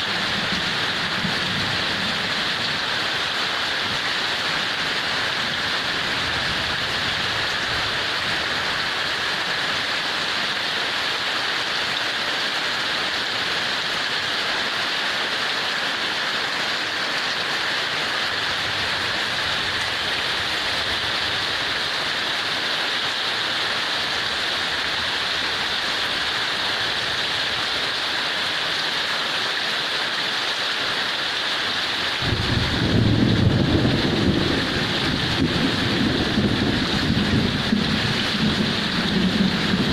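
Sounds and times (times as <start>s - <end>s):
heavy rain hissing: 0.0s - 39.9s
low rumble: 32.2s - 39.9s.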